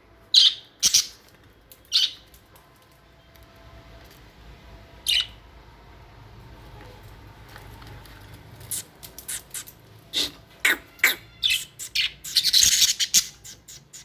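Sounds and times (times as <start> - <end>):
budgerigars chirping: 0.4 - 1.1, 5.1 - 5.4, 10.2 - 14.0.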